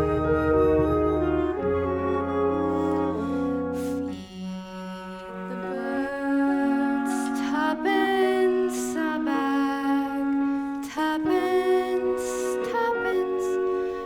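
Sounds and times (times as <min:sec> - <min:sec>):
orchestra playing slow held notes: 0:00.0 - 0:04.2.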